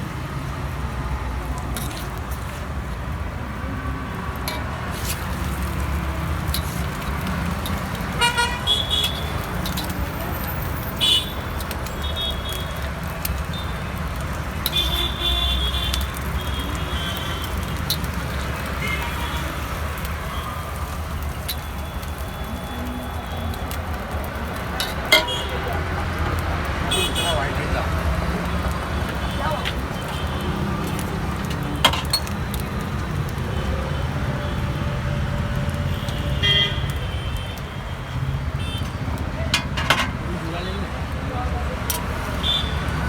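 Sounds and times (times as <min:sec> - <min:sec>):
street traffic rumble: 0:00.0 - 0:43.0
vehicle horns tooting: 0:08.1 - 0:09.5, 0:10.4 - 0:12.9, 0:14.6 - 0:17.8, 0:18.6 - 0:20.8, 0:24.8 - 0:28.0, 0:28.8 - 0:30.8, 0:34.4 - 0:40.2, 0:42.3 - 0:43.0.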